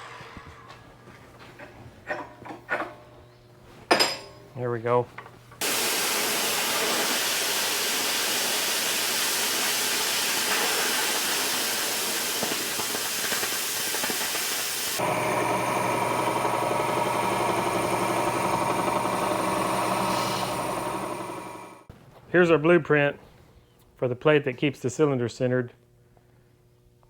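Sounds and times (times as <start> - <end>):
rushing gas hiss: 5.6 - 16.0, 16.6 - 21.9
machine hum with high whine: 15.0 - 21.8.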